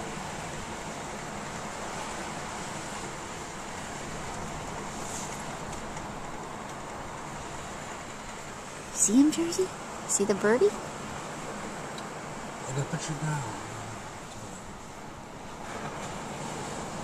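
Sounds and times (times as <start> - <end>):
surf: 0.0 - 17.0.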